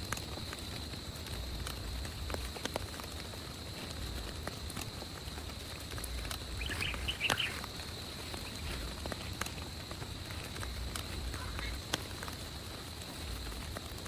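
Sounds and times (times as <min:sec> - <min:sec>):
steady rain hiss: 0:00.0 - 0:14.0
high chirping calls: 0:06.5 - 0:07.7.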